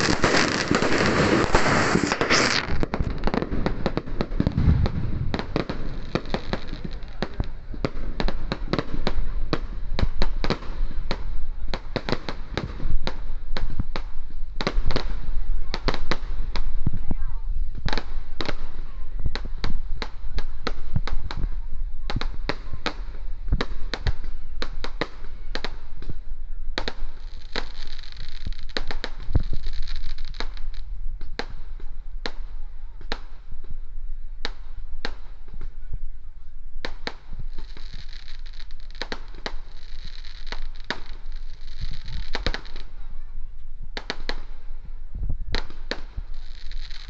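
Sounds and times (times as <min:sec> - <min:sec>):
fireworks hissing spray: 0:00.0 - 0:07.8, 0:36.8 - 0:43.0
fireworks banging: 0:00.0 - 0:33.8, 0:36.7 - 0:43.2, 0:43.9 - 0:47.0.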